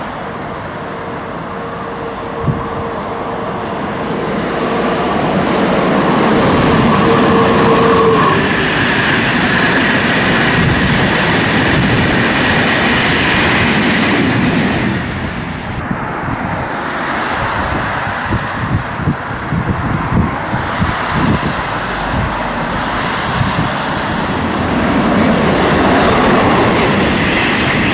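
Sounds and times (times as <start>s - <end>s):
passenger train passing: 0.0s - 27.9s
higher whine: 0.3s - 10.8s, 19.6s - 27.9s
steady whine: 20.4s - 27.9s.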